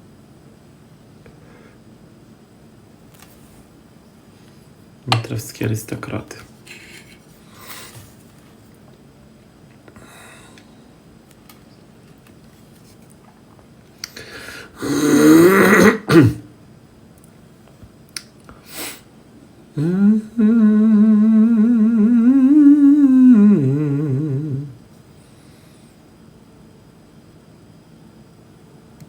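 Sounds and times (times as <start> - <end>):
noisy vocal burst: 14.2 - 16.5, 19.8 - 24.8
man humming: 14.8 - 16.4, 19.7 - 24.8.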